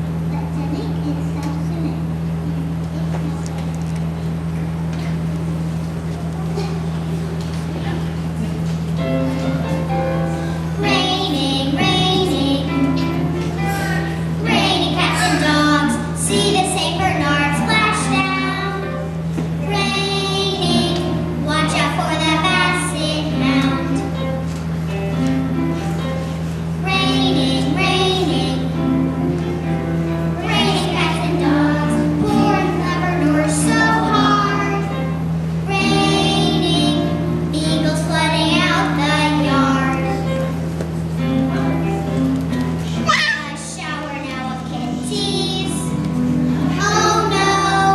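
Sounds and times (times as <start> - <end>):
steady low hum: 0.0 - 47.9
musical accompaniment: 6.0 - 47.9
children singing: 10.8 - 19.0, 19.6 - 24.1, 30.4 - 35.0, 35.7 - 40.3, 46.6 - 47.9.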